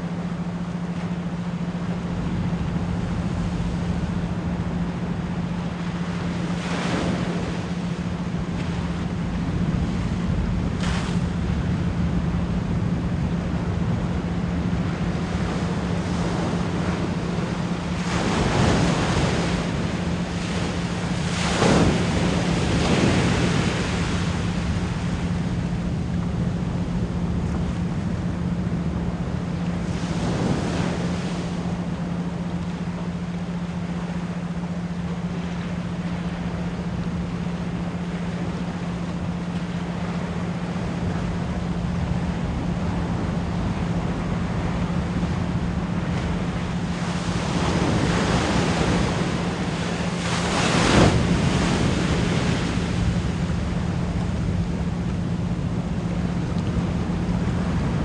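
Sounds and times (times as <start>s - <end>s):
ocean waves washing in: 0.0s - 58.0s
steady pure tone: 0.0s - 58.0s.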